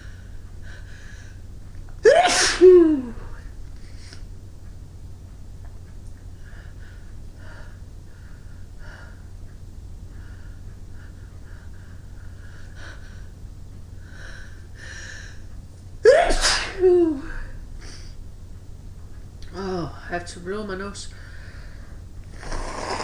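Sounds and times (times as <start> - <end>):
faint breath sounds: 0.0 - 1.5, 6.4 - 15.6, 21.1 - 23.0
woman sneezing: 2.0 - 3.3, 16.0 - 17.5.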